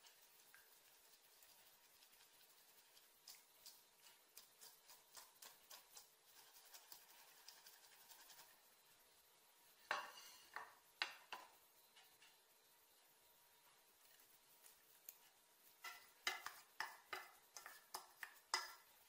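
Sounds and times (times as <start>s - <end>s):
utensil clinking against a dish: 15.8s - 18.9s.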